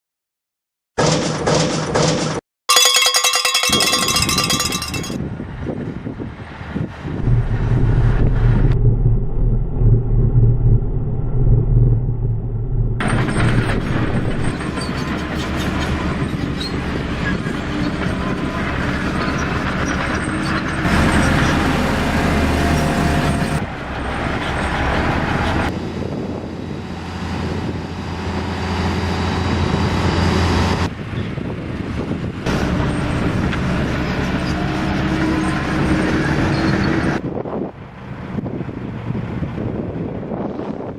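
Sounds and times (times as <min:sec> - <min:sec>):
construction machinery engine hum: 0:04.2 - 0:40.2.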